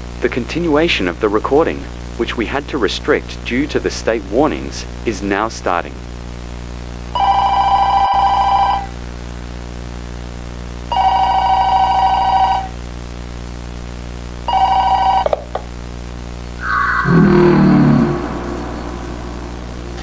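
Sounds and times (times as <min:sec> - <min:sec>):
steady low hum: 0:16.6 - 0:20.0.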